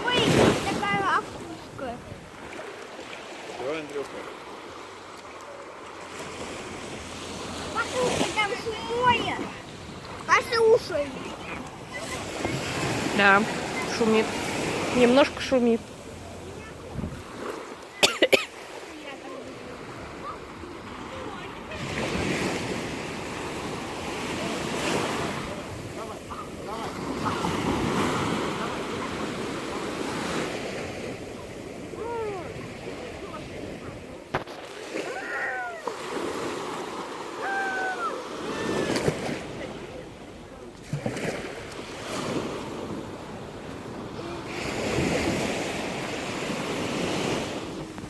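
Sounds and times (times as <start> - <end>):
sea surf washing in: 0.0 - 48.0
wind on microphone: 16.6 - 17.5.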